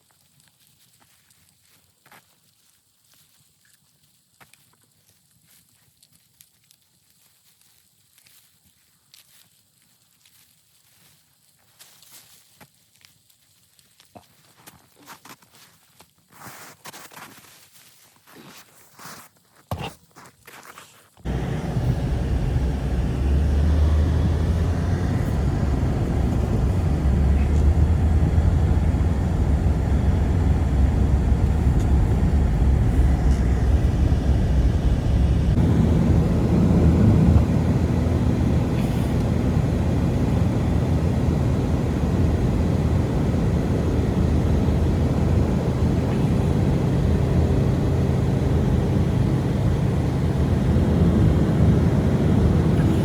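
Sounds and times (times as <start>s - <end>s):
strong blizzard wind: 21.3s - 53.0s.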